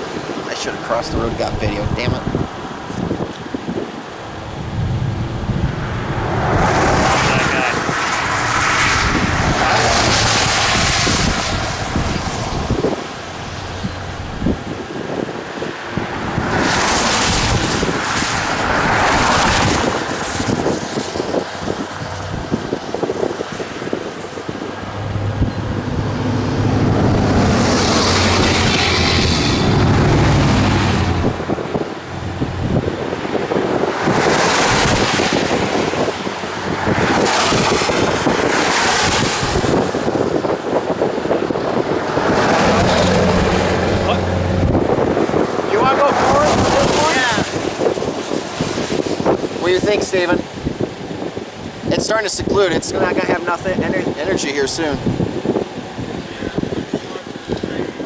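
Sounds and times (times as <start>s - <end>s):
vehicle engine humming: 0.0s - 38.9s, 40.3s - 46.2s
road traffic passing: 0.0s - 58.0s
wind buffeting microphone: 0.0s - 58.0s.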